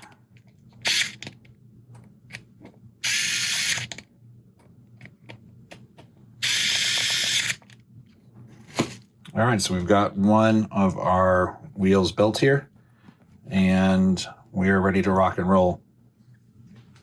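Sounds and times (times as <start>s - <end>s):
electric screwdriver whirring: 0.8s - 1.2s, 3.0s - 4.0s, 6.4s - 7.7s.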